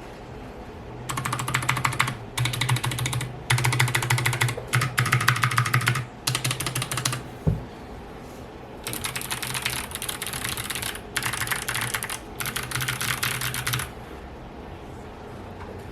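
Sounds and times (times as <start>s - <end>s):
clicky mechanical keyboard typing: 1.1s - 7.2s, 8.8s - 13.9s
dull thump: 7.4s - 7.7s.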